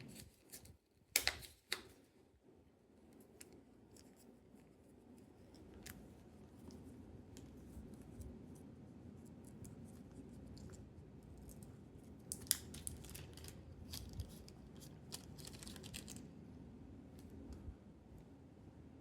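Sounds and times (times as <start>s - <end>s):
hands handling plastic packaging: 3.2s - 16.3s.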